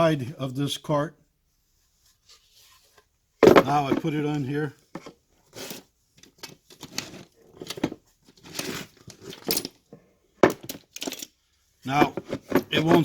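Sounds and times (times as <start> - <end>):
board scraping and rustling: 2.1 - 4.2, 4.9 - 5.9, 11.9 - 13.0.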